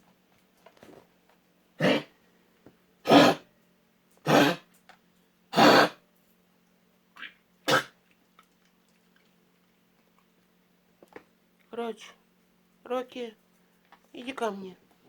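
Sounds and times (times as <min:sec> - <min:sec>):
dog coughing: 0:01.8 - 0:02.1, 0:03.0 - 0:03.5, 0:04.2 - 0:04.7, 0:05.5 - 0:06.0, 0:07.6 - 0:08.0.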